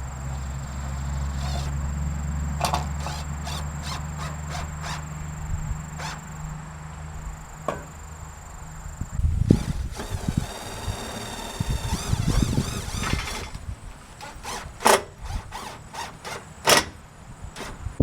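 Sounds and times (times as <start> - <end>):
wind rumbling on microphone: 4.8 - 6.6, 8.5 - 14.0, 17.2 - 18.0.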